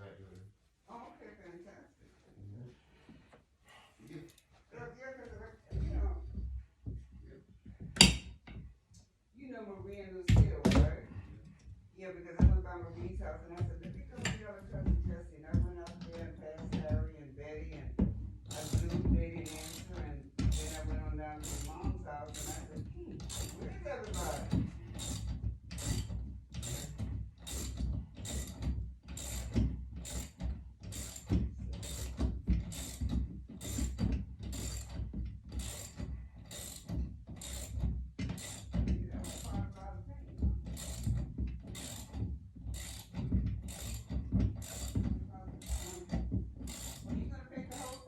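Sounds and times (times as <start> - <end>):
hand tool rasping strokes: 18.4 - 39.8, 40.5 - 48.0.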